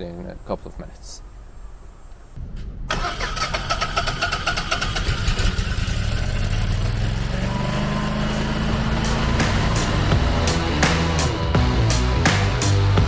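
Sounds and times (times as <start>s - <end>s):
generator running: 2.9s - 13.0s.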